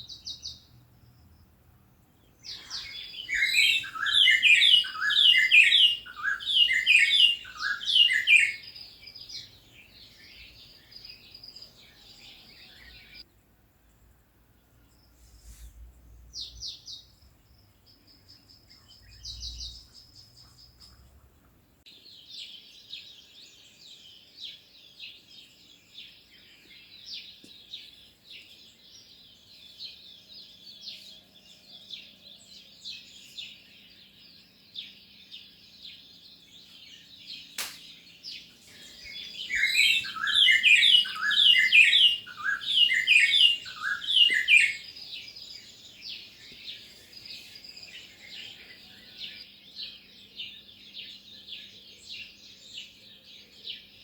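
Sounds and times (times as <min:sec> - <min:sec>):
small birds chirping: 0:00.0 - 0:54.0
sharp click: 0:37.6 - 0:37.9.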